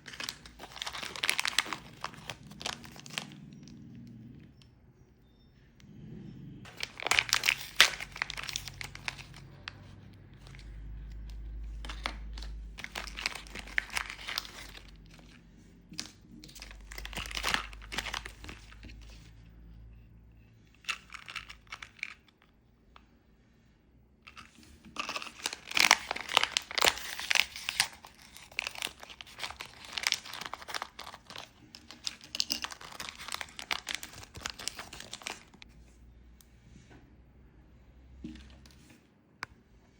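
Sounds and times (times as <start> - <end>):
plastic packaging crinkling and tearing: 0.0 - 3.6, 6.7 - 19.4, 20.8 - 22.4, 24.3 - 35.7.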